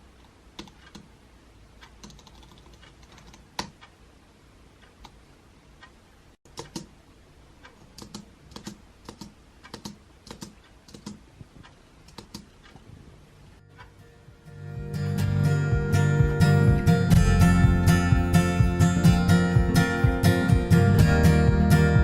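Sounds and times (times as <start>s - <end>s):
keyboard key clicks: 6.5s - 6.9s, 7.9s - 11.2s.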